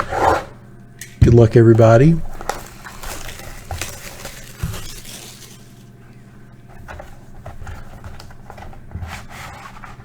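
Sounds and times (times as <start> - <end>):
cardboard rustling and scraping: 1.7 - 5.9, 6.7 - 10.0.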